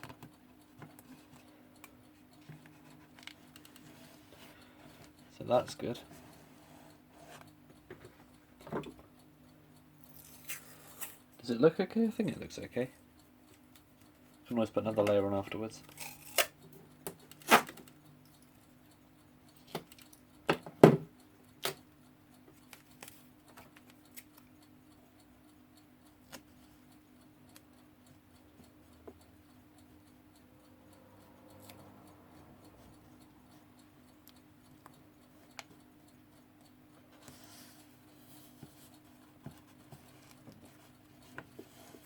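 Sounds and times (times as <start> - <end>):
faint ticks: 21.2 - 42.0.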